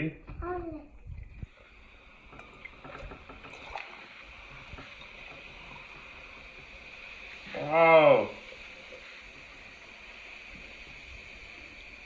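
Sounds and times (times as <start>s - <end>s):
fizzing hiss: 0.4s - 12.0s
liquid splashing: 0.9s - 9.8s.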